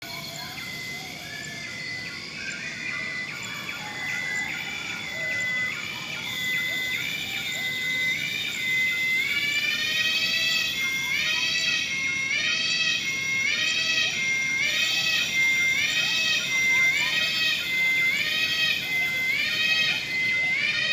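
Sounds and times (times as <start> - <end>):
overlapping rising insect notes: 0.0 - 20.9
siren-like insect call: 0.0 - 20.9.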